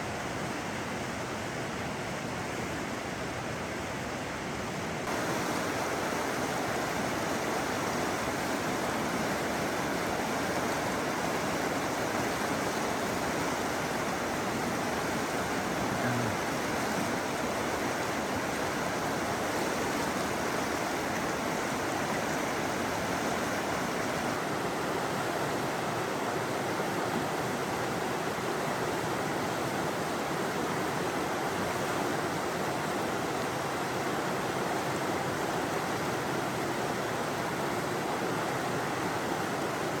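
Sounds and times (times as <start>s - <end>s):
river water rushing: 0.0s - 40.0s.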